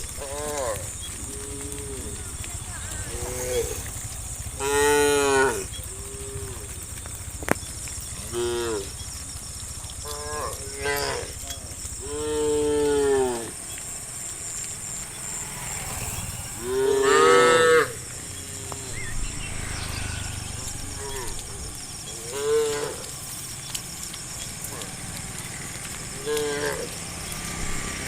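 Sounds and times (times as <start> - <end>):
cattle mooing: 12.0 - 18.9, 20.2 - 23.1, 26.2 - 27.0
high hiss: 12.2 - 23.1
steady low hum: 13.2 - 23.1.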